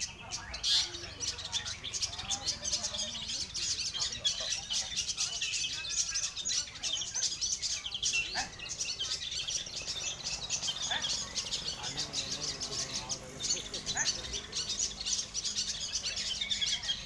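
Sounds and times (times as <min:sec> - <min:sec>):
chorus of birds chirping: 0:00.0 - 0:17.0.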